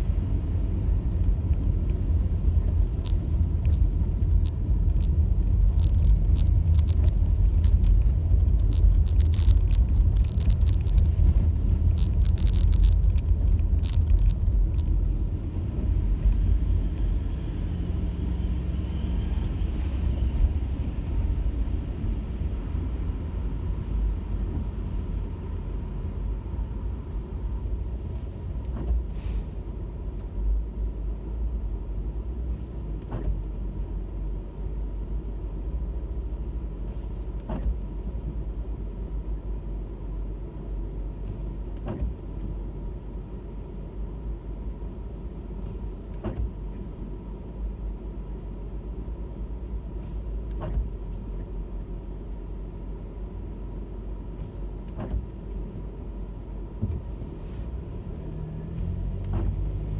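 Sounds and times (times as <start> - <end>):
car engine and road noise: 0.0 - 59.9
sharp clicks and ticks: 2.6 - 15.6.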